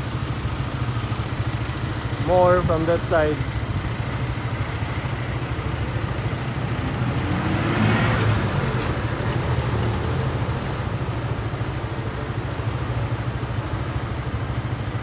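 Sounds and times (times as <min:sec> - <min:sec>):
low engine rumble: 0:00.0 - 0:12.6
vehicle passing: 0:06.2 - 0:10.9.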